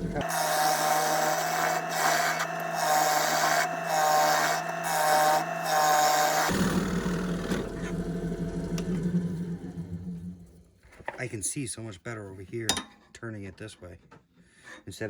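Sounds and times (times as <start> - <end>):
turning tool scraping wood: 0.0 - 6.7
lathe humming: 0.0 - 10.5.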